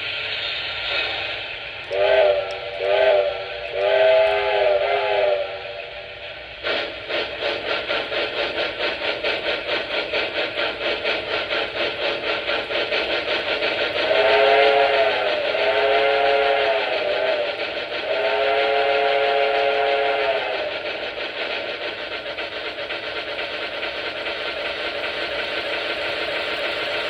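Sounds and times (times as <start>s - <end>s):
steam locomotive chuffing: 0.0s - 27.0s
steam whistle blasts: 1.9s - 6.2s, 14.0s - 20.8s.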